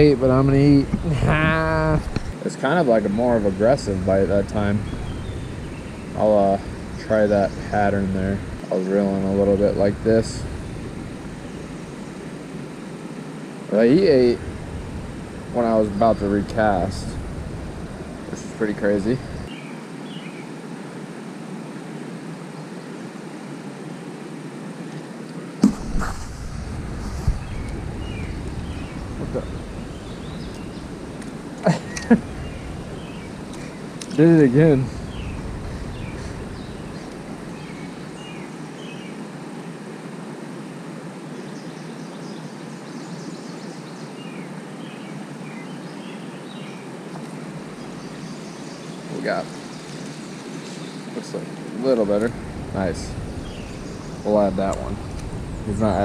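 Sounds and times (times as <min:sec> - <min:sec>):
bird chirps: 0:03.2 - 0:12.2, 0:25.6 - 0:39.2, 0:47.7 - 0:56.0
sharp knock: 0:25.6 - 0:26.6.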